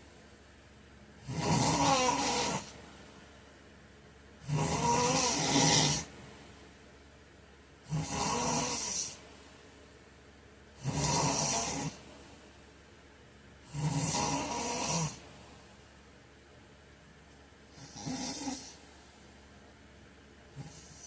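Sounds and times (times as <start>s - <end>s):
quiet breaths: 0.0s - 3.6s, 17.5s - 19.8s, 20.4s - 21.0s
man snoring: 1.2s - 2.8s, 4.4s - 6.1s, 7.9s - 9.2s, 10.8s - 12.0s, 13.7s - 15.2s, 17.7s - 18.8s, 20.6s - 21.0s.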